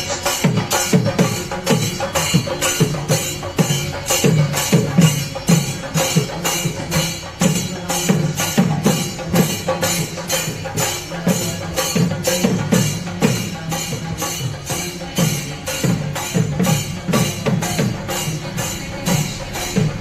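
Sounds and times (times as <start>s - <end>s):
drums beaten rapidly: 0.0s - 20.0s
hand cymbals clashing: 0.0s - 20.0s.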